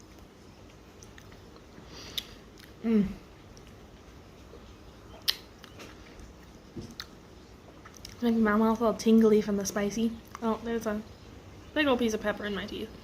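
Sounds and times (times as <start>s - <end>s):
wet chewing: 0.0s - 2.8s, 3.4s - 8.2s
person humming mm: 2.8s - 3.3s
mouth clicks: 5.1s - 5.9s.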